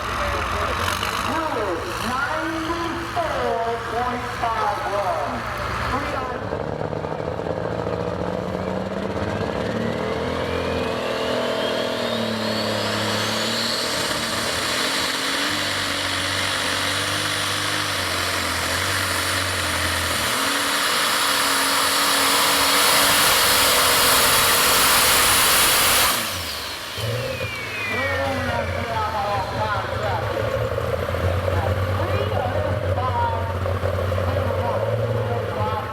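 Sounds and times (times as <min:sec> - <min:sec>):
engine at full throttle: 0:00.0 - 0:35.9
turbo whine: 0:09.6 - 0:35.9.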